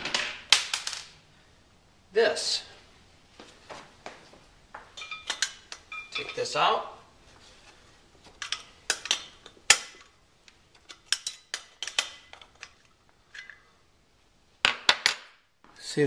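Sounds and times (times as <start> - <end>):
metal tools clicking and knocking: 4.9 - 6.6, 8.2 - 13.7.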